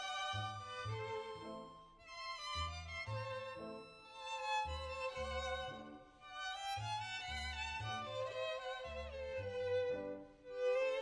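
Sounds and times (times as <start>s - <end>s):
low musical accompaniment: 0.0s - 11.0s
violin playing slow melody: 0.0s - 11.0s.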